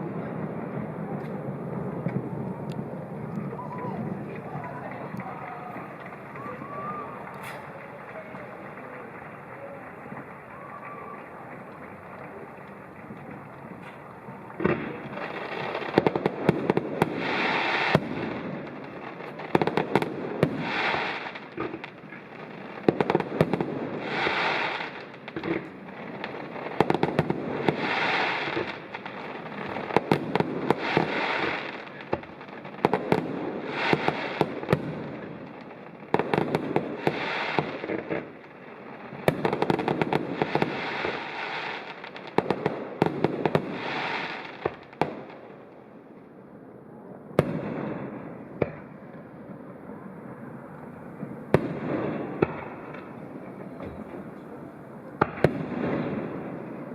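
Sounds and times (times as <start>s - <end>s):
firework crackling: 0.0s - 56.9s
firework shells bursting: 2.1s - 35.0s.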